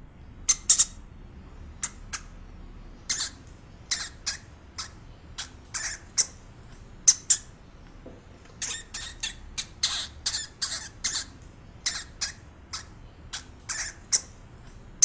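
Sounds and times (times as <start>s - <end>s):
hamster squeaking: 0.5s - 1.0s, 3.0s - 6.4s, 7.0s - 7.6s, 8.6s - 14.4s.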